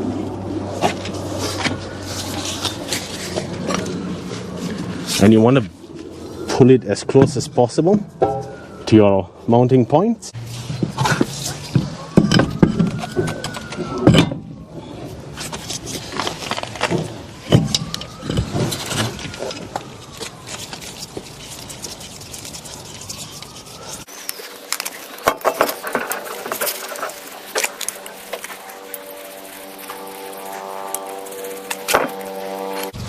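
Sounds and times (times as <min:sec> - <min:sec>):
faint rising and falling tone: 0:25.0 - 0:33.0.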